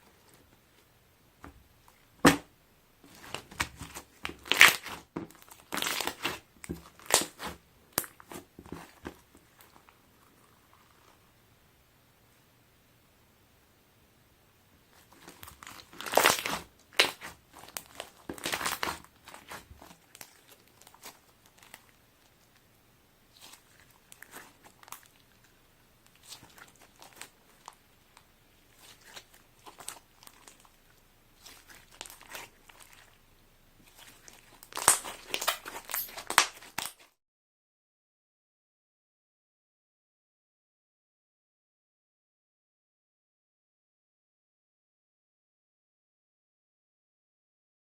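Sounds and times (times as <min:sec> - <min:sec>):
slime squishing and popping: 0:03.1 - 0:09.8, 0:15.2 - 0:21.9, 0:31.4 - 0:33.2, 0:33.8 - 0:37.0.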